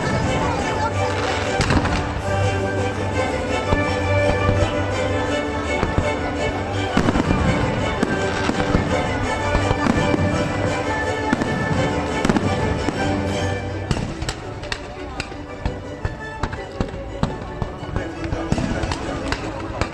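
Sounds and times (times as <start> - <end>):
fireworks bangs and crackles: 0.0 - 2.4, 6.9 - 19.9
loud music: 0.0 - 19.9.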